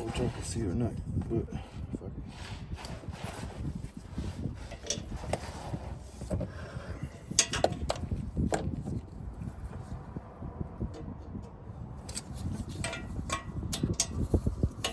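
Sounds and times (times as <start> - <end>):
knocks and clatter of handling: 7.2 - 9.0, 12.1 - 14.9.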